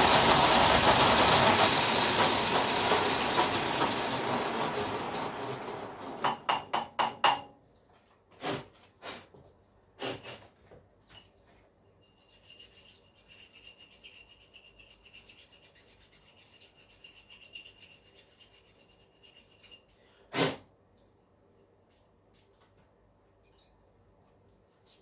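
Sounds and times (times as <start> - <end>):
metal rasping with high whine: 0.0 - 6.3, 12.0 - 19.9.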